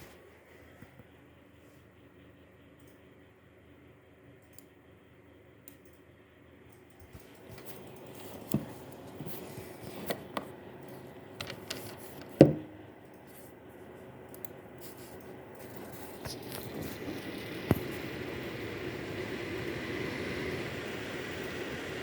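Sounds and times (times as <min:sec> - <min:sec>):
graphics card humming: 0:00.0 - 0:22.0
small grinding noise: 0:07.0 - 0:12.4.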